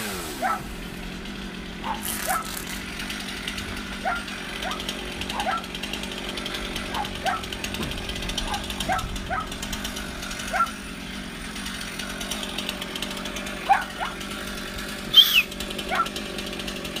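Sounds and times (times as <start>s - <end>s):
chainsaw engine running: 0.0s - 17.0s
dog barking: 0.4s - 0.7s, 1.8s - 2.5s, 4.0s - 5.7s, 6.9s - 7.5s, 8.4s - 9.5s, 10.5s - 10.8s, 13.6s - 14.2s, 15.9s - 16.2s
sharp high squeal: 15.1s - 15.5s.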